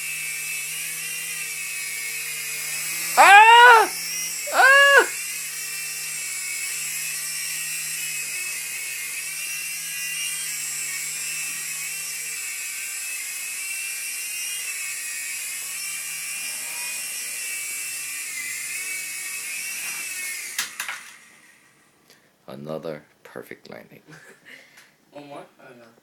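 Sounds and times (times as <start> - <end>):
toy helicopter motor whine: 0.0 - 3.2, 3.8 - 4.5, 5.1 - 21.9.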